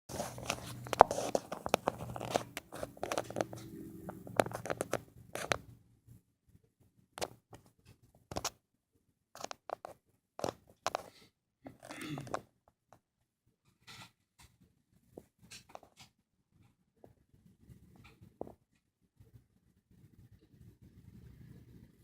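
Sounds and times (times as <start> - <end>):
scratching and clicking: 0.1 - 5.8
faint low hum: 0.2 - 6.6.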